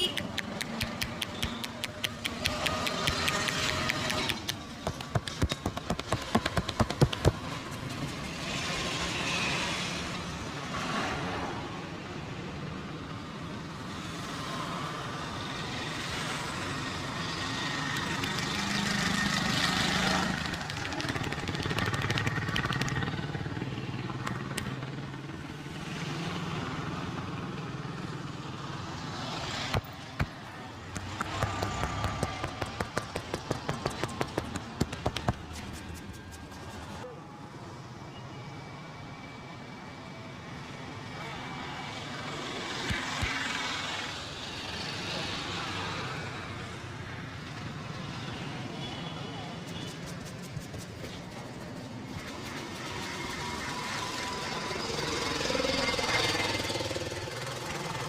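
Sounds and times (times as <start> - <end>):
hands slapping head and shoulders: 0.0 - 7.4, 29.7 - 36.5, 42.8 - 43.4
street traffic: 0.0 - 58.0.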